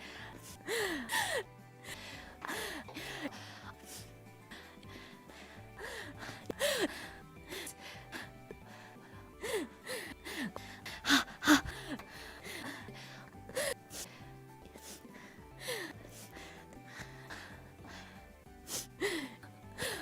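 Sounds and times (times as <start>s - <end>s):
quiet background music: 0.0s - 20.0s.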